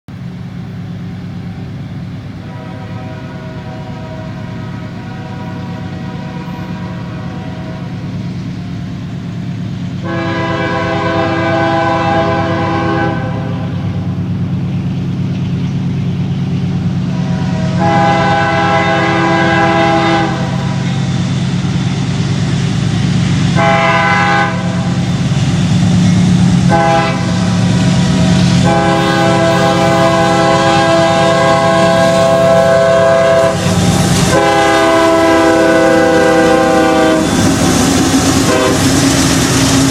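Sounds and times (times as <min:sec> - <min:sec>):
train engines rumbling: 0:00.1 - 0:39.9
locomotive air horn: 0:02.4 - 0:08.2, 0:10.0 - 0:14.1, 0:17.0 - 0:21.8, 0:23.5 - 0:25.0, 0:26.6 - 0:39.2.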